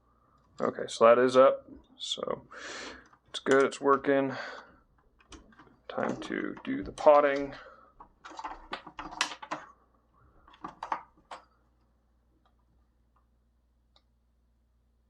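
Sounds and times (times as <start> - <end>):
sharp clicks and light knocks: 3.0 - 4.1, 5.0 - 9.7.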